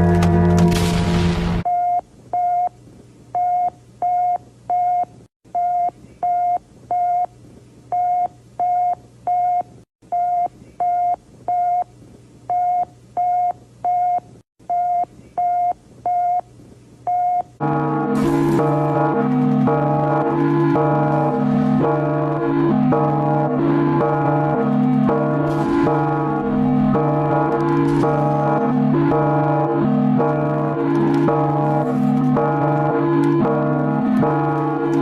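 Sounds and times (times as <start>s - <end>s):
ringing gong-like music: 17.6s - 35.0s.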